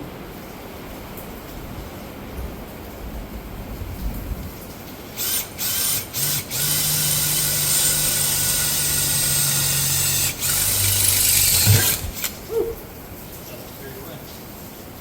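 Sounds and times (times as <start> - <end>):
power drill motor running: 5.2 - 12.4.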